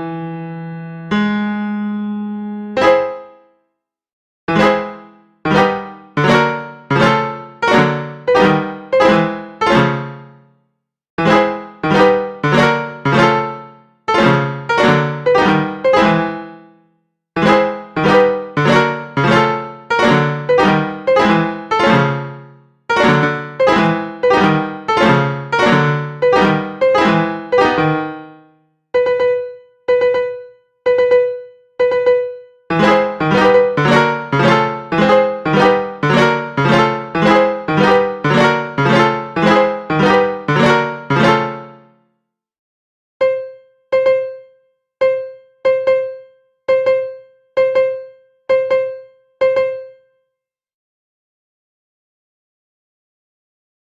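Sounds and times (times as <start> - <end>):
piano chords: 0.0 - 3.4, 4.5 - 10.4, 11.2 - 16.8, 17.4 - 42.0, 43.2 - 50.0
repeated high piano note: 2.7 - 3.4, 4.5 - 10.1, 17.4 - 22.3, 29.0 - 41.8.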